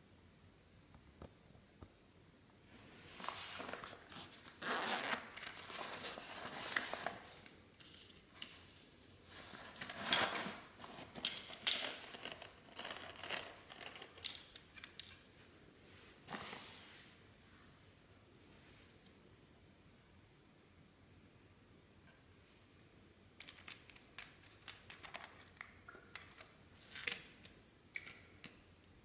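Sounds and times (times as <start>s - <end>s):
small objects rustling and scraping: 2.7s - 14.9s, 15.9s - 17.2s.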